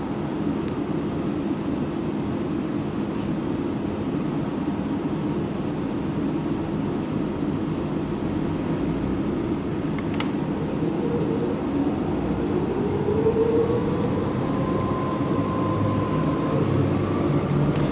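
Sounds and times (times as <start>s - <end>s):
bus engine whining: 5.9s - 17.9s.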